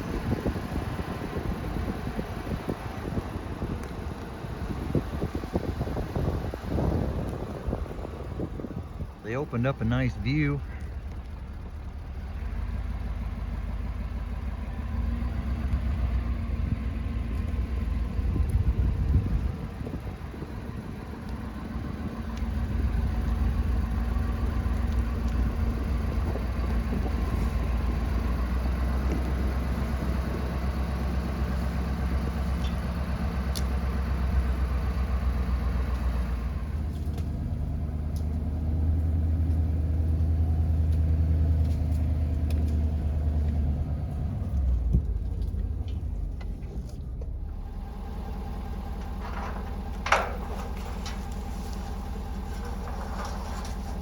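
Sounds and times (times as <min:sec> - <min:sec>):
vehicle engine and road rumble: 0:00.0 - 0:54.0.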